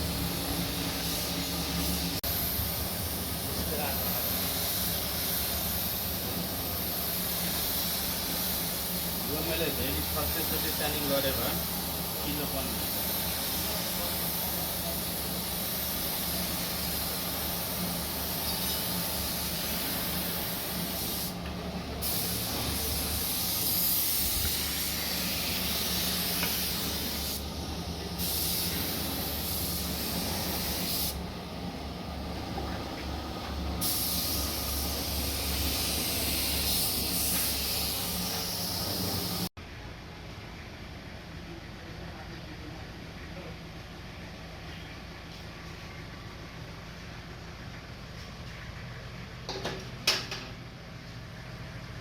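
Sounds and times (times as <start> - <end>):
paint spray gun hissing: 0.0 - 31.2, 33.7 - 39.5.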